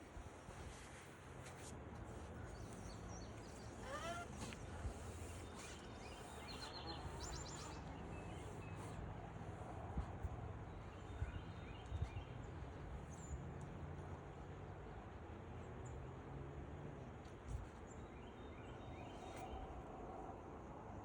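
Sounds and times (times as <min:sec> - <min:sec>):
small birds chirping: 0:02.1 - 0:09.1.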